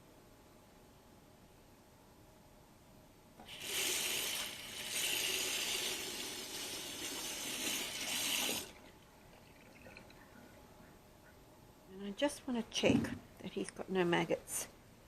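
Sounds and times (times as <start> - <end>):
tap water running: 3.4 - 10.2.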